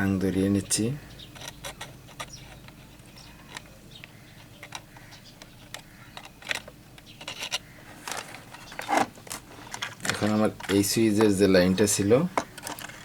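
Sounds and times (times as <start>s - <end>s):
soldering tools clicking and tapping: 12.3s - 12.9s.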